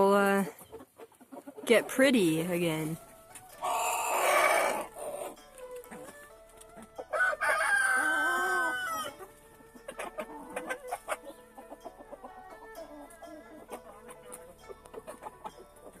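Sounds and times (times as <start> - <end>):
chickens clucking: 0.0 - 16.0
rooster crowing: 3.6 - 4.9, 7.1 - 9.2.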